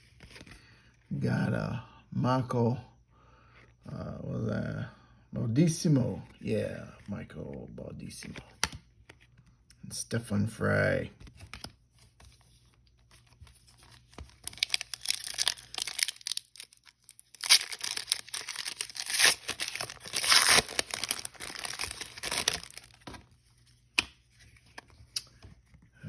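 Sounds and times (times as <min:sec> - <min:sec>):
wrapper tearing and crinkling: 0:14.1 - 0:23.3.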